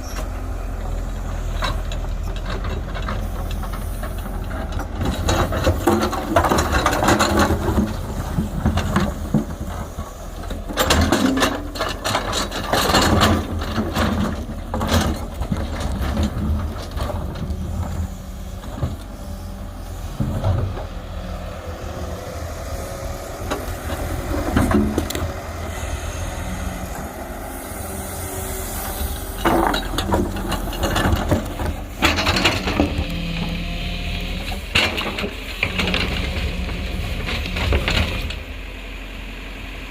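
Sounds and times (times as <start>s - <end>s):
excavator diesel engine running: 0.0s - 39.9s
knocks and clanks: 1.6s - 18.0s, 23.5s - 25.3s, 29.3s - 33.5s, 34.4s - 38.4s.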